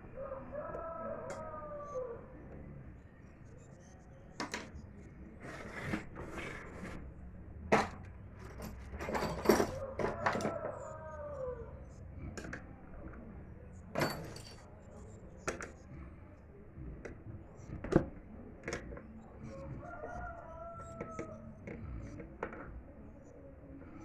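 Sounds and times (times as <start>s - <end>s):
parts scraping: 5.3s - 7.2s
small parts clinking and knocking: 7.7s - 10.8s, 13.9s - 14.7s.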